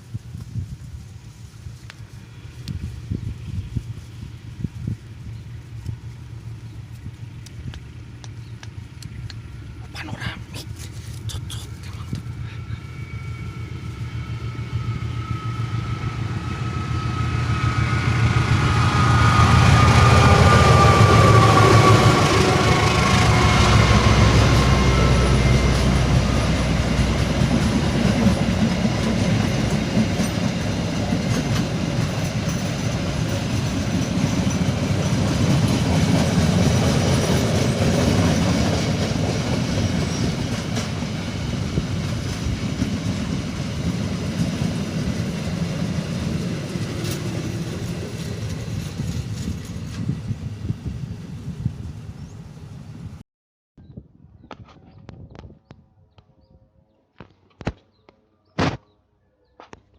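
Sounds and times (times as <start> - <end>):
high ringing tone: 12.6 - 22.0
train wheels clattering: 18.4 - 50.1.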